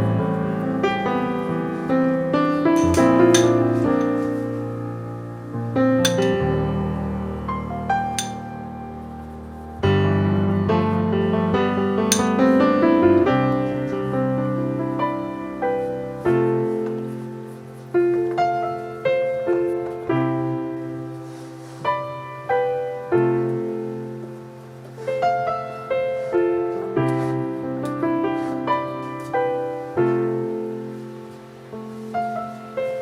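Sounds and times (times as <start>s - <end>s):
slow gentle piano piece: 0.0s - 33.0s.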